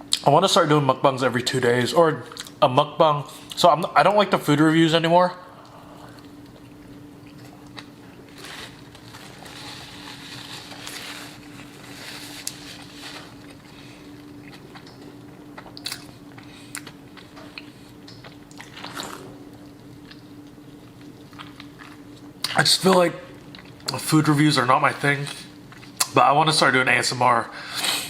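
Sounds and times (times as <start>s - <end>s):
faint steady hum: 0.0s - 28.0s
chewing crunchy food: 5.6s - 24.0s, 25.3s - 26.1s.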